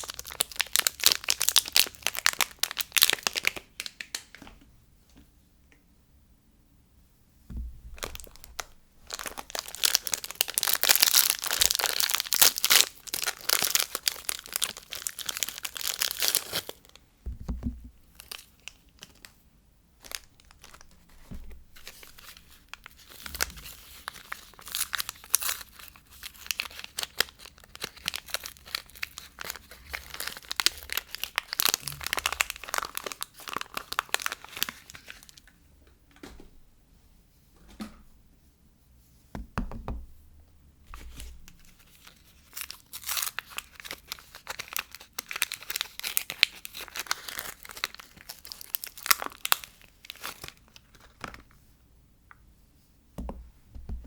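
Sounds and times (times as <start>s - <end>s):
packaging tearing and crinkling: 0.0s - 4.3s, 7.9s - 17.0s, 18.1s - 19.3s, 20.0s - 35.4s, 40.9s - 51.5s
soft low bump: 7.5s - 9.2s, 17.2s - 18.0s, 21.2s - 21.8s.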